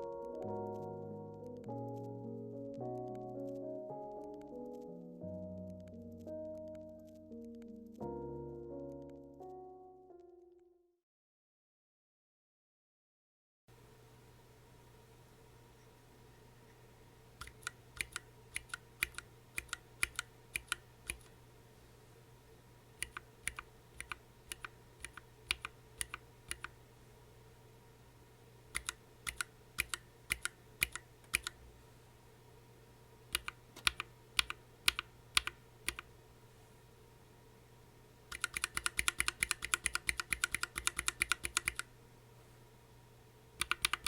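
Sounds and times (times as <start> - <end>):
mechanical keyboard typing: 0.0 - 4.9, 17.4 - 21.3, 23.0 - 26.8, 28.7 - 31.6, 33.3 - 36.1, 38.3 - 41.9, 43.6 - 44.0.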